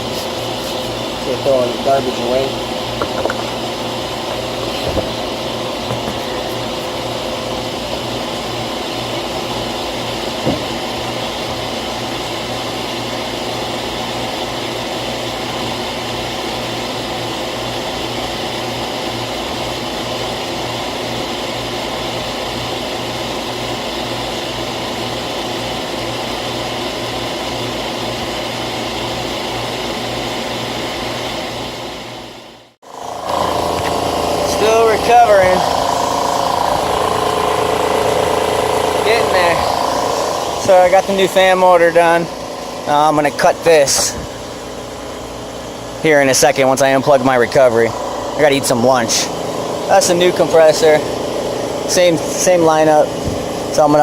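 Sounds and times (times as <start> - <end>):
refrigerant recovery machine humming: 0.0 - 54.0
knock: 10.4 - 10.7.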